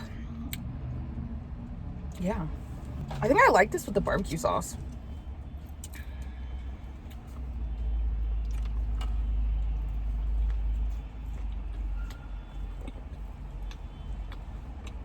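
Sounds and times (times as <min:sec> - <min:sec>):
person chewing food: 0:04.9 - 0:07.6, 0:08.4 - 0:15.0.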